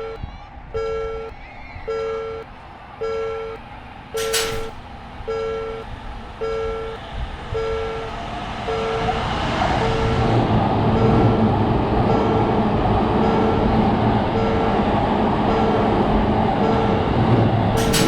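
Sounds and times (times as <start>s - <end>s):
level crossing alarm ding: 0.0s - 0.2s, 0.8s - 1.3s, 1.9s - 3.6s, 4.2s - 9.2s, 14.4s - 14.9s, 17.8s - 18.0s
train running noise: 0.0s - 18.0s.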